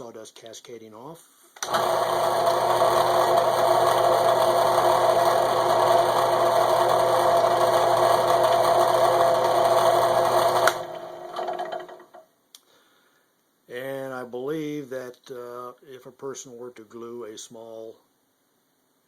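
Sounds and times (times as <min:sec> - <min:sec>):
jigsaw cutting: 0:01.6 - 0:12.1.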